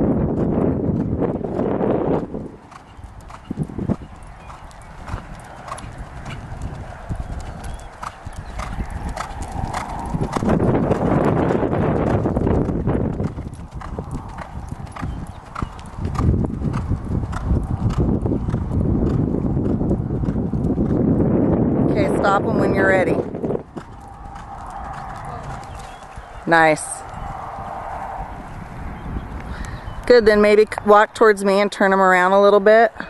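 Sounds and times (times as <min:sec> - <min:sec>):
horse hoofbeats cantering: 0:00.0 - 0:28.6
rumbling noise: 0:08.6 - 0:29.4.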